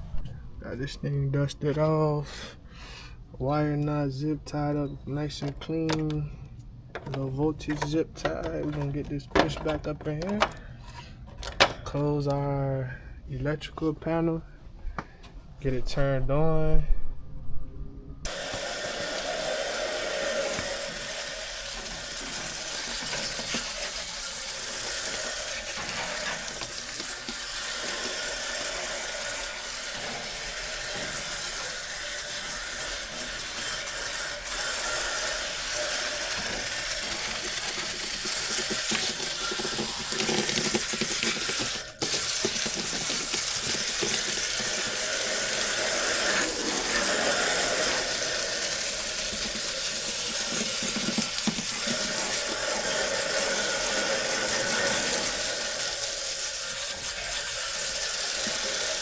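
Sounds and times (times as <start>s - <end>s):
running water: 18.3s - 59.0s.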